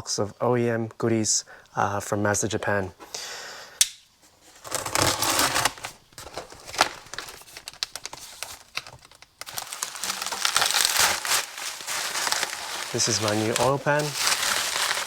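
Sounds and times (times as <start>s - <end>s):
packing material crinkling: 4.5s - 15.0s.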